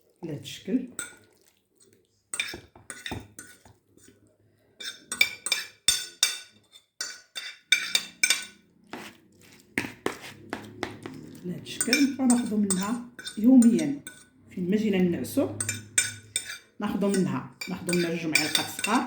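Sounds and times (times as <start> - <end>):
utensil clinking against jar: 4.8 - 9.1, 9.8 - 14.3, 15.6 - 19.0.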